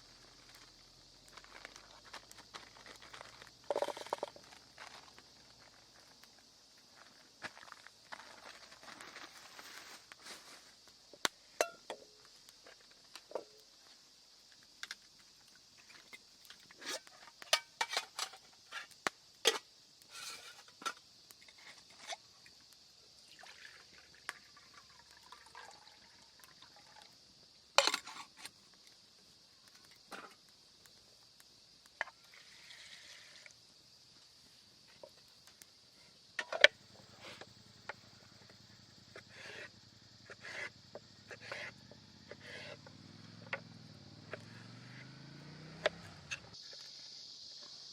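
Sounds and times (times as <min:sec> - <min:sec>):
faint high hiss: 0:00.0 - 0:02.2.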